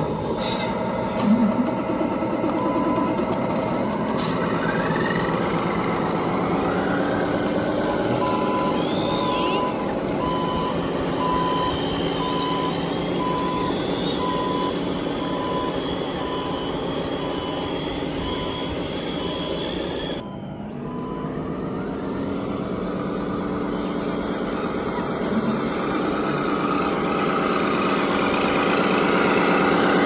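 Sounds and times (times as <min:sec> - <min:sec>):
model truck motor whine: 0:00.0 - 0:30.0
reversing beeper: 0:02.6 - 0:03.2, 0:04.2 - 0:22.7.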